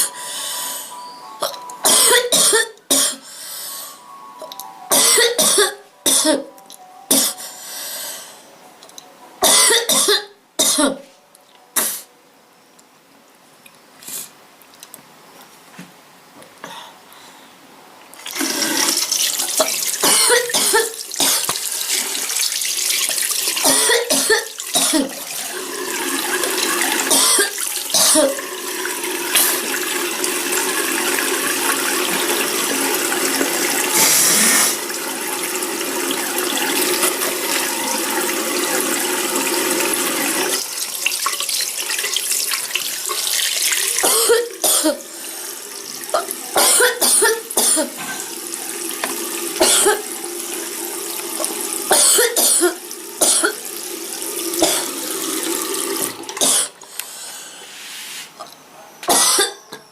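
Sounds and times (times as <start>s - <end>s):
person coughing: 1.4s - 3.2s, 4.9s - 6.5s, 9.4s - 11.1s, 19.6s - 21.5s, 23.7s - 25.2s, 27.1s - 28.4s, 44.0s - 45.0s, 46.1s - 48.2s, 49.6s - 50.0s, 51.9s - 53.6s, 59.1s - 59.8s
water running from a tap: 18.2s - 56.9s.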